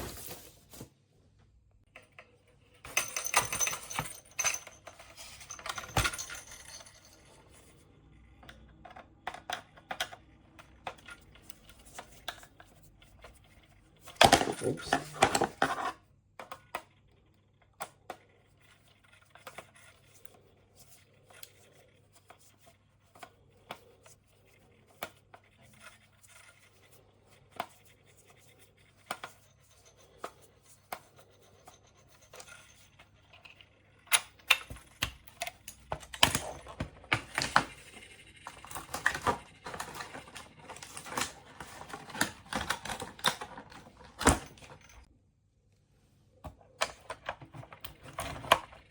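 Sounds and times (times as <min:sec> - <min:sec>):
rustling: 0:00.0 - 0:01.1.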